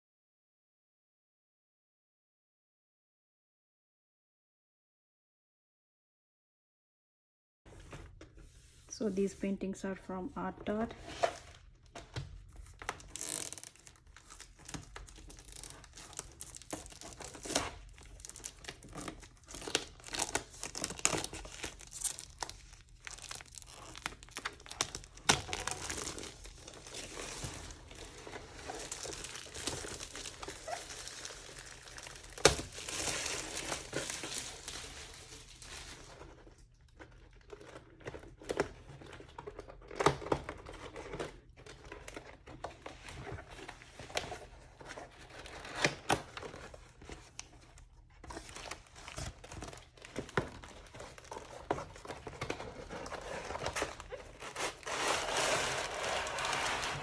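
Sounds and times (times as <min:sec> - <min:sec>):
packaging crinkling and tearing: 0:11.0 - 0:57.0.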